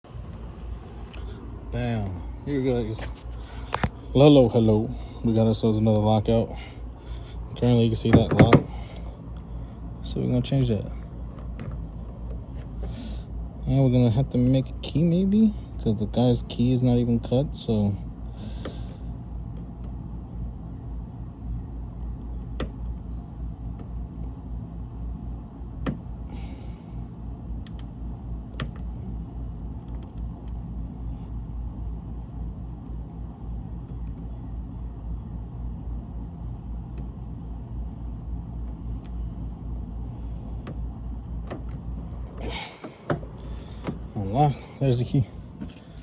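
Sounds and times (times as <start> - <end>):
vehicle engine idling: 0.0 - 46.0.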